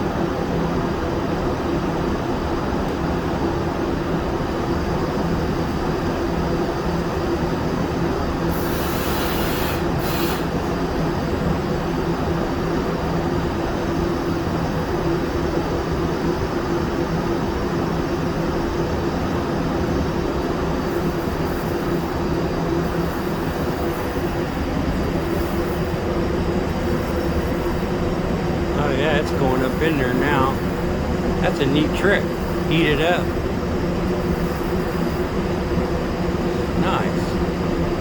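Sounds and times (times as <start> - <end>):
shop machinery drone: 0.0 - 38.0
hissing air burst: 8.6 - 10.6.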